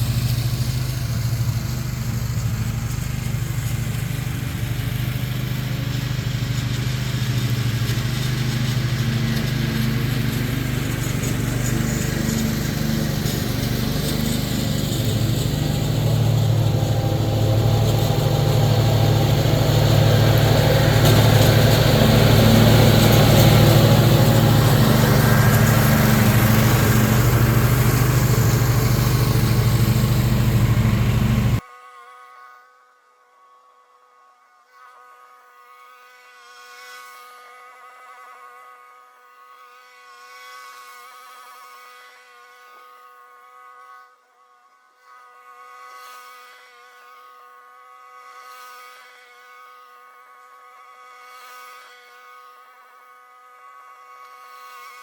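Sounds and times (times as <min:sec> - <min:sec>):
mower engine humming: 0:00.0 - 0:31.6.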